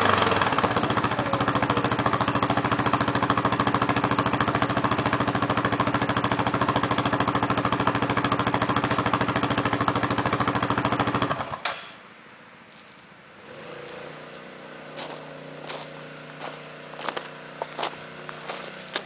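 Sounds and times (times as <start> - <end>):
atv engine idling: 0.0 - 11.9, 12.8 - 19.0.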